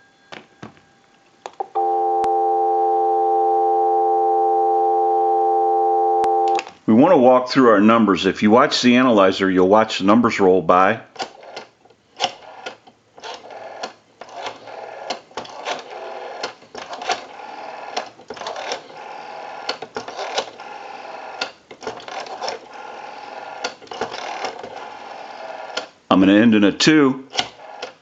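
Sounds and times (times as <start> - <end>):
rotary dial whirring back: 11.2 - 26.0, 27.3 - 28.0
rotary phone dial clicking: 11.2 - 26.0, 27.3 - 28.0.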